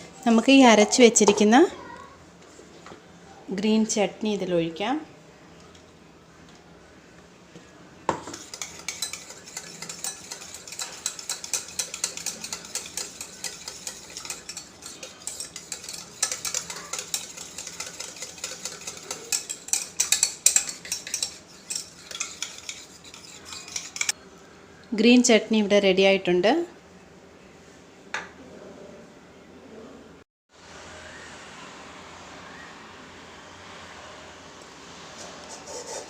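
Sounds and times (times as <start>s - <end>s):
spoon scraping a bowl: 8.2s - 24.2s, 35.2s - 36.0s.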